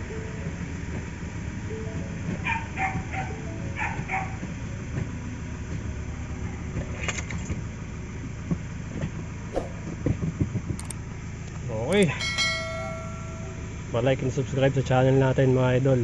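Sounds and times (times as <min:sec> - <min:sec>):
dog barking: 0:02.4 - 0:04.4.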